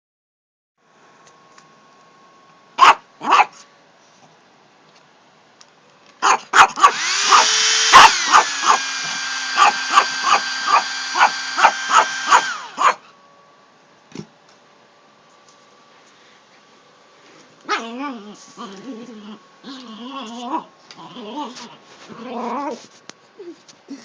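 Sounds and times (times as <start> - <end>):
small dog barking sharply: 2.8 - 3.6, 6.2 - 8.8, 9.6 - 13.0
hair dryer whirring hiss: 6.9 - 12.8.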